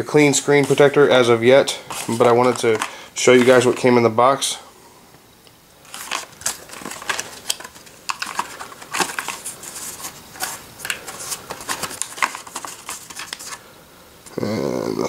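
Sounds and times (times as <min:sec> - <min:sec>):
packaging crinkling: 0:00.4 - 0:03.9, 0:05.8 - 0:13.6
packaging clicks and taps: 0:01.9 - 0:03.6, 0:05.9 - 0:13.6.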